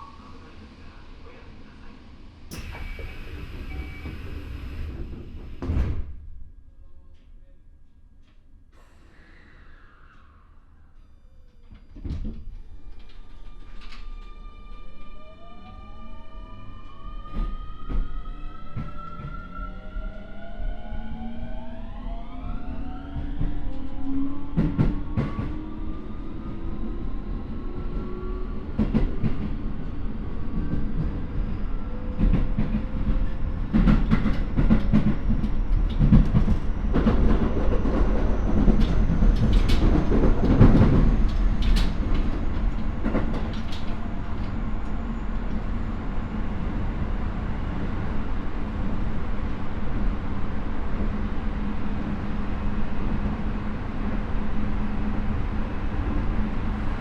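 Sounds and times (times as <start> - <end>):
train steady rumble: 0.0 - 9.1, 22.9 - 57.0.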